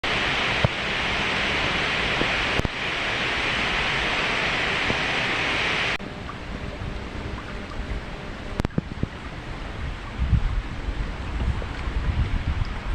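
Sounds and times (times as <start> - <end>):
waterfall rushing: 0.0 - 10.0.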